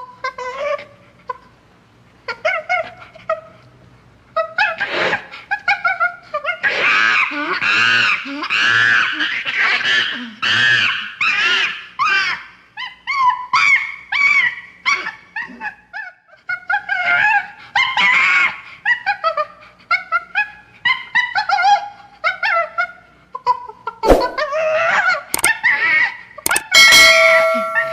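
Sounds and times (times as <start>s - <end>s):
chimpanzee squeaks and whimpers: 4.5s - 22.6s
chimpanzee calls: 5.5s - 15.8s.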